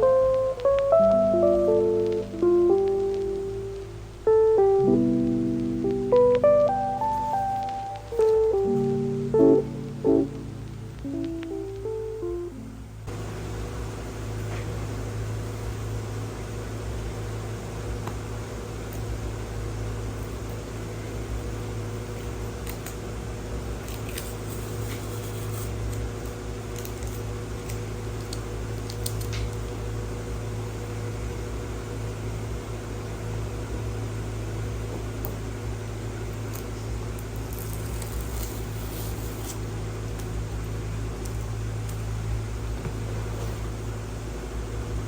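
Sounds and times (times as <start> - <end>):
steady low hum: 0.0 - 25.6.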